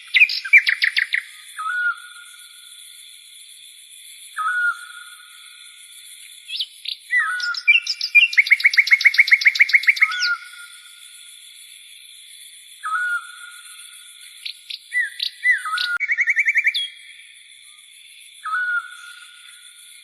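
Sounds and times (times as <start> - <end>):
bird whistling and trilling: 0.0 - 2.2, 4.4 - 5.0, 6.5 - 10.7, 12.8 - 13.4, 14.4 - 17.0, 18.4 - 19.4.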